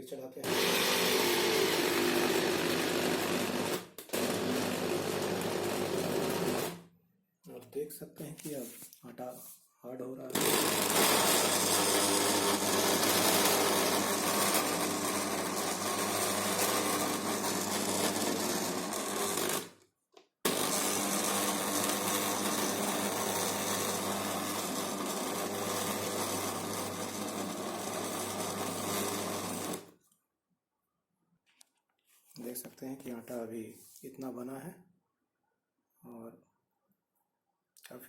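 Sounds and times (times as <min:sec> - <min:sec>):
food chopper motor running: 0:00.4 - 0:06.8, 0:10.3 - 0:19.7, 0:20.5 - 0:29.9.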